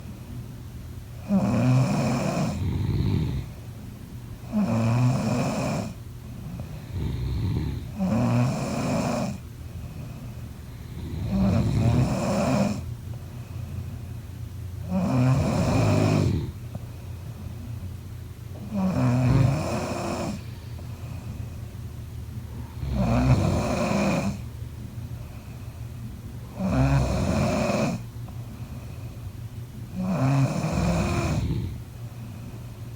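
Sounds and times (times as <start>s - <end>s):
person snoring: 1.3s - 3.5s, 4.5s - 6.0s, 6.8s - 9.4s, 10.8s - 12.9s, 14.9s - 16.6s, 18.7s - 20.6s, 22.5s - 24.4s, 26.5s - 28.0s, 30.0s - 31.8s.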